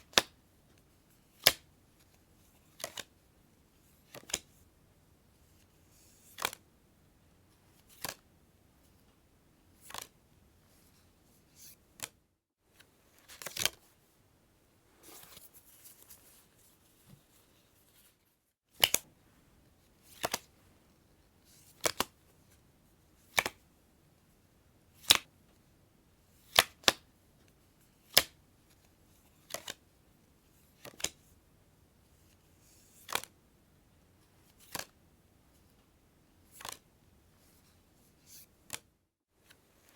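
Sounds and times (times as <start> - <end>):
soft card rustling: 9.8 - 14.2, 14.9 - 19.1
playing cards snapping: 18.8 - 19.1, 21.8 - 22.1, 23.3 - 23.6, 25.0 - 25.3, 26.5 - 27.0.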